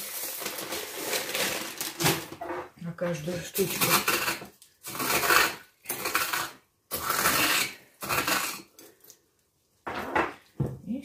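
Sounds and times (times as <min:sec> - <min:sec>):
corn flakes crackling: 0:00.0 - 0:02.3.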